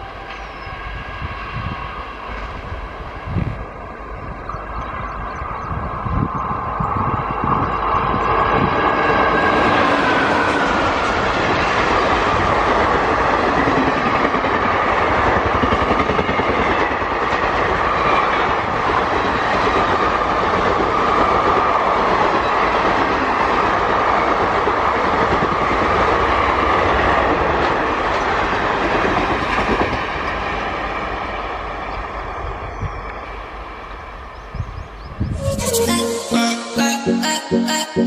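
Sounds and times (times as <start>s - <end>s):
steady high tone: 35.3s - 38.0s.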